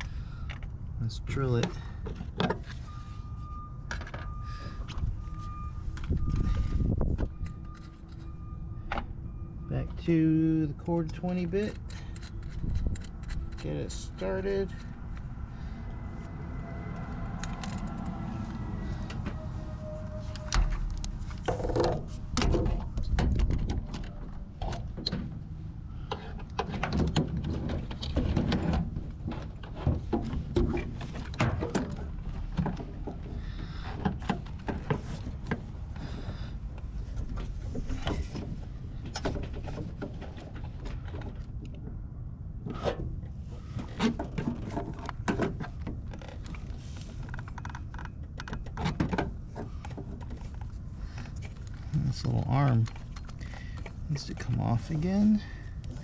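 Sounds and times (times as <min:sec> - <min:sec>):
hand tools and metal parts rattling: 0:10.1 - 0:15.3, 0:43.6 - 0:56.0.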